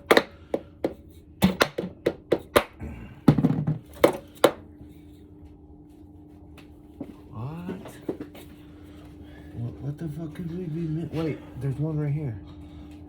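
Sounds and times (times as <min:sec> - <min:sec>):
mallet striking engine parts: 0:00.0 - 0:04.6.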